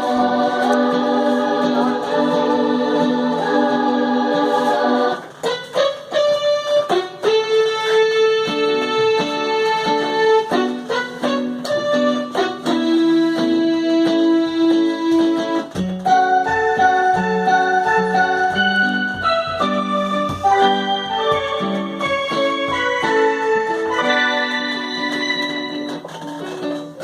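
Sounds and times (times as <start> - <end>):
electronic keyboard playing: 0.0 - 27.0.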